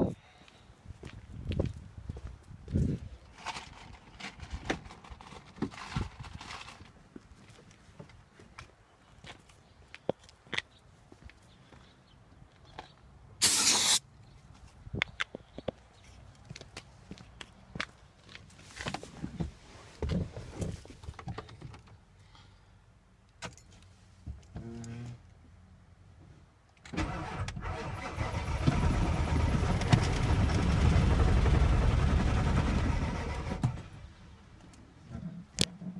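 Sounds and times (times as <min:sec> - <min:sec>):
diesel engine cranking on starter: 0:26.9 - 0:34.1.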